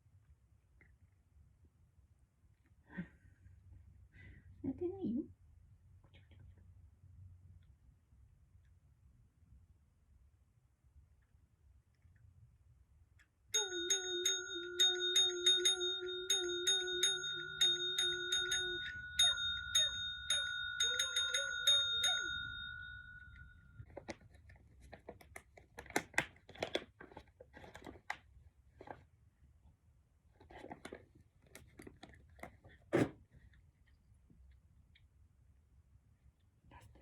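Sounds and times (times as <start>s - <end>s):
small bell struck: 13.6s - 23.6s.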